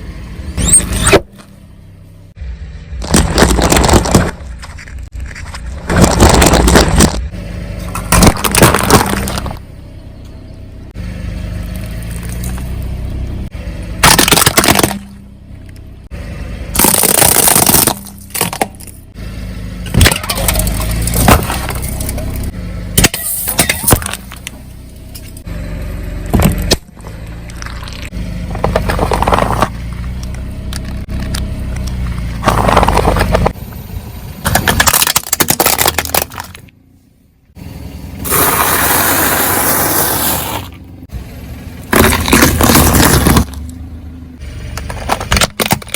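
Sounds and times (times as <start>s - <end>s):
car rumble: 0.0s - 45.9s
tyre crushing objects: 3.0s - 7.3s, 7.9s - 9.6s, 16.8s - 18.9s, 19.9s - 22.2s, 26.2s - 30.1s, 32.0s - 33.6s, 41.9s - 43.7s, 44.8s - 45.9s.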